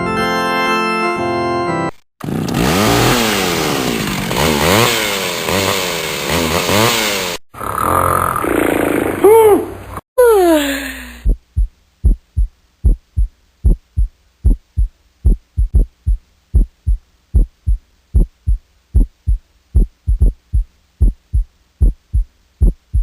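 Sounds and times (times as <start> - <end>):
heartbeat thumps: 11.2 - 23.0.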